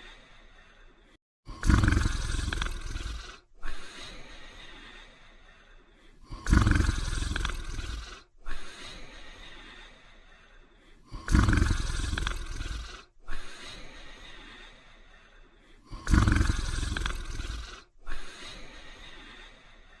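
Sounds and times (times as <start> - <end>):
dog snoring: 1.5 - 3.8, 6.2 - 8.3, 11.0 - 13.1, 15.8 - 18.2.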